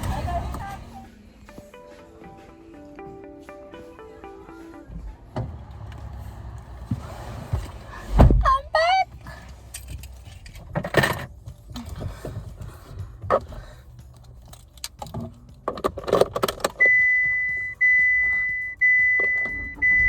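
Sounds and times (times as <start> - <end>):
keys jangling: 9.5 - 16.8
car warning chime: 16.8 - 20.0.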